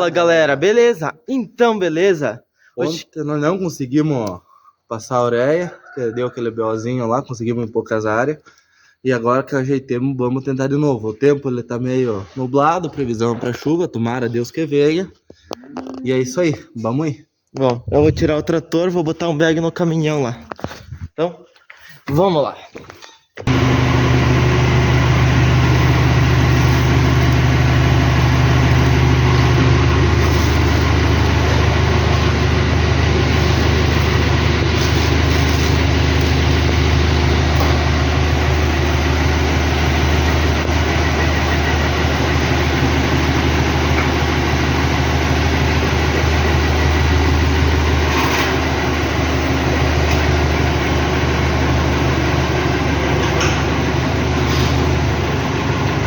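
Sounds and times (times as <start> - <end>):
diesel tractor engine running: 23.5 - 56.0.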